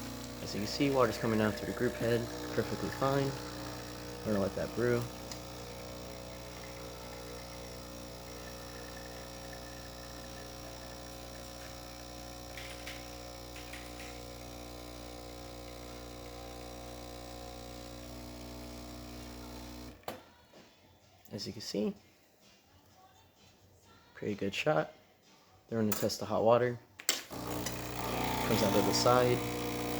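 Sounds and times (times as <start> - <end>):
espresso machine pump humming: 0.0 - 20.0, 27.3 - 29.9.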